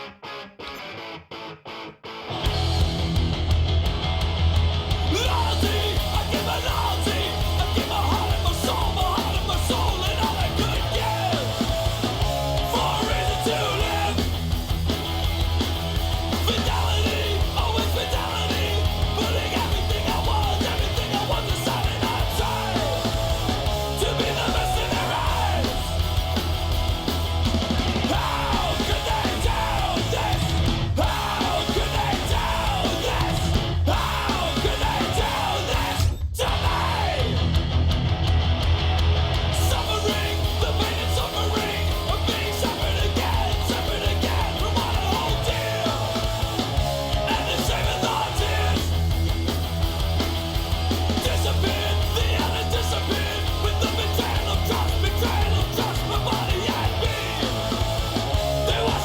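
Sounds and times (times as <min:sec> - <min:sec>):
heavy rock music: 0:00.0 - 0:59.0
shouted vocals: 0:05.0 - 0:14.5, 0:16.4 - 0:26.2, 0:27.8 - 0:37.6, 0:39.4 - 0:49.0, 0:51.0 - 0:59.0.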